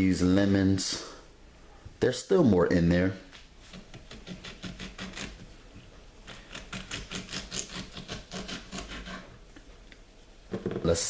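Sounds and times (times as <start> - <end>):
lemon peels rubbed by hand: 3.6 - 9.3.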